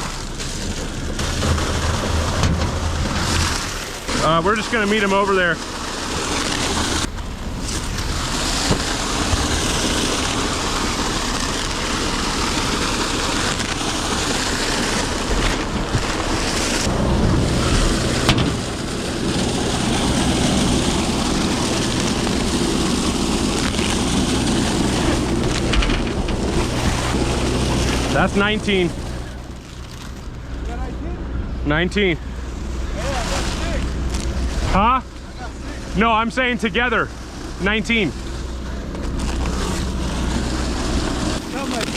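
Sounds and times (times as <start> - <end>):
deep engine hum: 0.0 - 41.9
engine running: 0.0 - 41.9
wind on microphone: 6.5 - 29.6.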